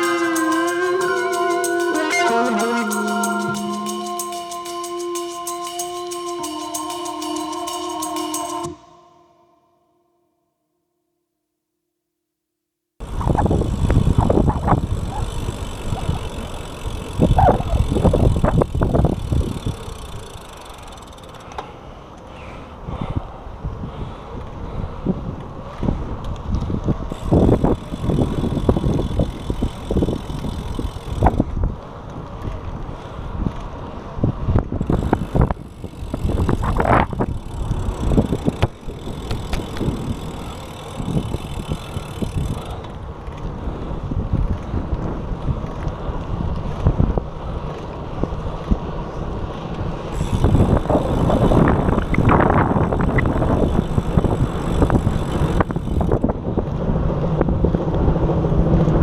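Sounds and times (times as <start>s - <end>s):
wind buffeting microphone: 23.0s - 59.0s.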